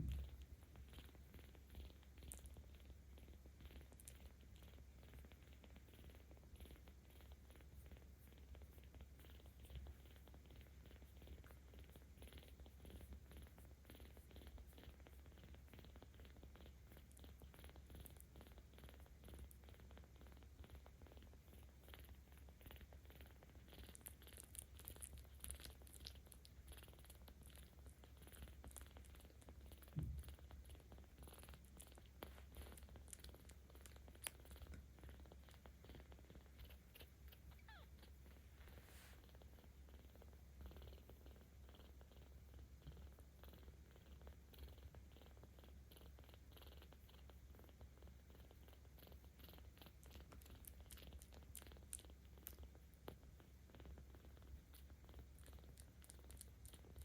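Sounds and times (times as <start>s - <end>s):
kitten purring: 0.0s - 57.0s
short thump: 30.0s - 30.2s.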